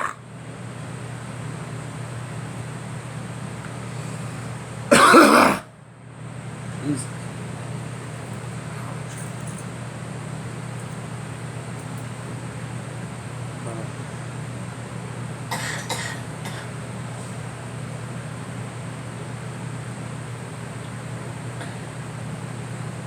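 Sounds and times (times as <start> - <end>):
steady low hum: 0.0 - 23.0
girl coughing: 4.9 - 5.7, 15.5 - 16.7.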